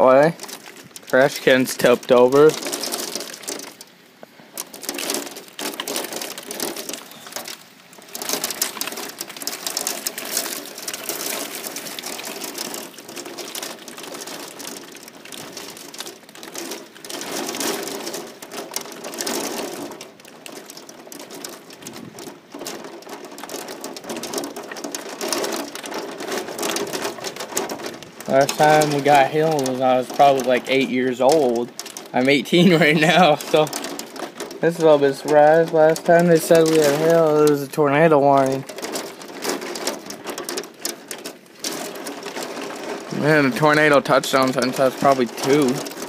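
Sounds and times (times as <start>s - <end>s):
hail clattering on house: 0.0s - 46.0s.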